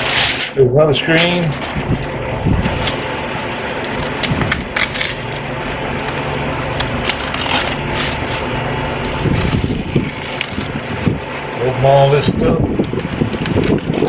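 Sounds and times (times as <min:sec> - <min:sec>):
steady background hum: 0:00.0 - 0:14.0
plastic packaging crinkling: 0:06.8 - 0:08.4, 0:13.2 - 0:14.0.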